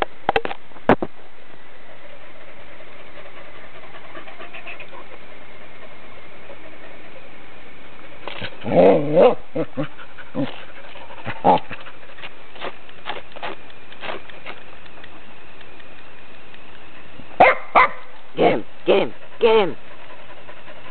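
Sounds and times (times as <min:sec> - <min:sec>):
dogs whining yelps: 0:02.2 - 0:07.3.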